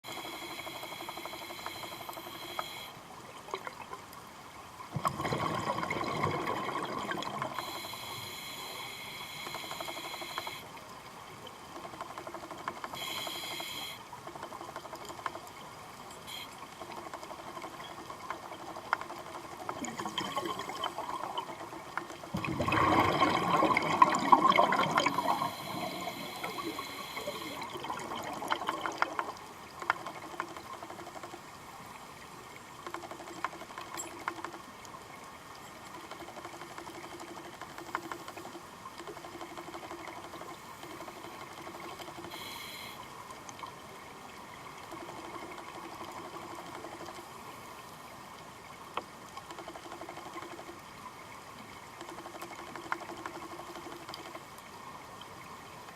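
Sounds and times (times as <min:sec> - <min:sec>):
steady underwater bubbling: 0:00.0 - 0:04.2, 0:04.9 - 0:31.6
faint clicks: 0:00.1 - 0:04.2, 0:06.5 - 0:22.3, 0:23.9 - 0:31.6, 0:32.8 - 0:35.0, 0:35.6 - 0:43.7, 0:48.9 - 0:50.9, 0:51.6 - 0:54.7
regulator bubbles rushing: 0:05.0 - 0:07.7, 0:19.5 - 0:29.3.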